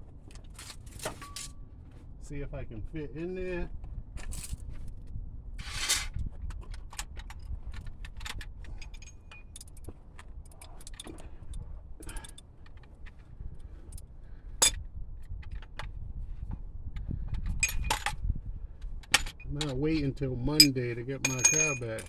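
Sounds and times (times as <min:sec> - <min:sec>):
steady low rumble: 0:01.8 - 0:06.6, 0:07.2 - 0:22.0
metal hand tools clinking: 0:20.6 - 0:22.0.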